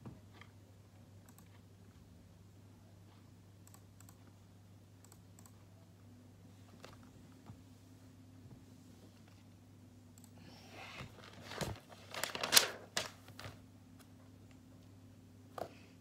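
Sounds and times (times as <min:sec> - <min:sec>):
low electrical hum: 0:00.0 - 0:16.0
crinkling and tearing: 0:11.2 - 0:13.5.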